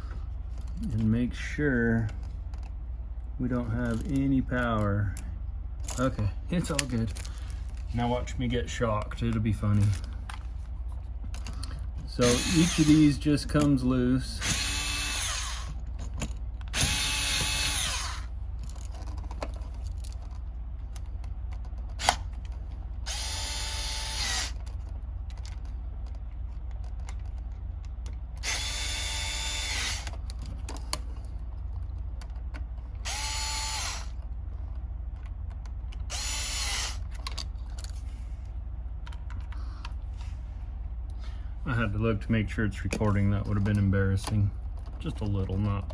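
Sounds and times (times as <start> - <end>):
power screwdriver whirring: 12.2 - 13.2, 14.4 - 15.8, 16.7 - 18.3, 23.1 - 24.6, 28.4 - 30.2, 33.0 - 34.2, 36.1 - 37.1.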